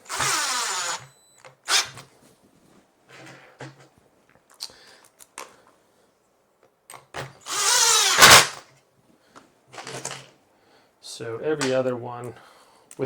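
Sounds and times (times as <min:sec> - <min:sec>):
cordless drill running: 0:00.0 - 0:02.0, 0:07.4 - 0:08.6.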